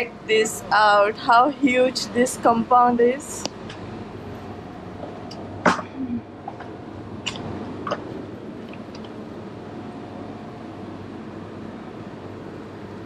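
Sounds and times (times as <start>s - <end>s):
steady background hum: 0.0s - 13.0s
sharp click: 7.2s - 8.0s.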